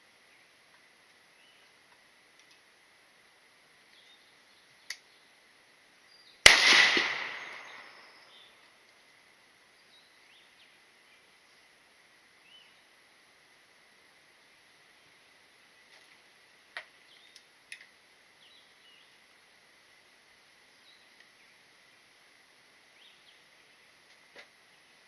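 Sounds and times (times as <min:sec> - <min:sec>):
faint click: 0:01.9 - 0:02.6
gunshot: 0:06.5 - 0:08.1.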